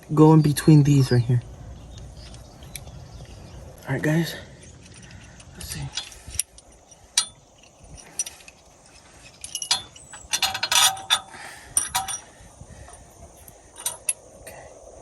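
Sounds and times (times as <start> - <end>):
metal parts clinking: 1.3 - 14.3.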